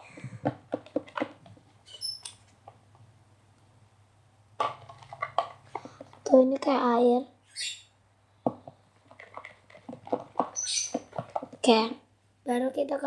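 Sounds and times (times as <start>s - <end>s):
spatula stirring wet mix: 4.6s - 6.3s, 8.6s - 11.7s.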